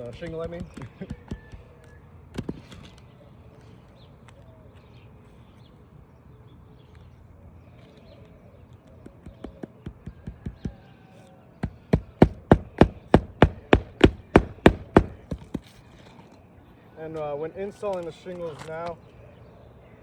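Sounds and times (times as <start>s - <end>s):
hammer driving nails into shingles: 0.0s - 2.9s, 11.6s - 16.0s.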